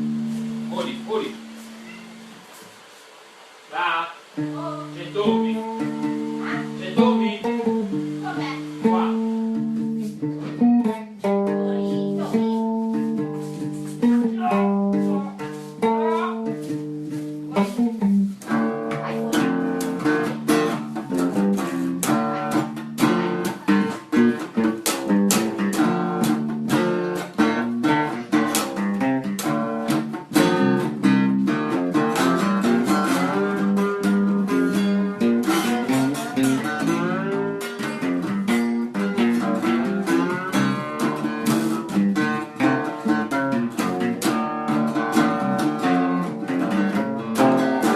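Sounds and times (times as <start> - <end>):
plucked guitar music: 0.0 - 2.9, 4.2 - 47.9.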